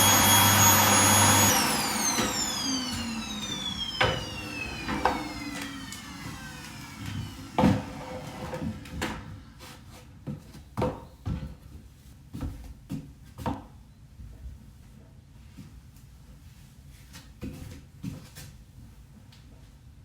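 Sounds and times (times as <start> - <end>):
vacuum cleaner motor winding down: 0.0 - 9.6.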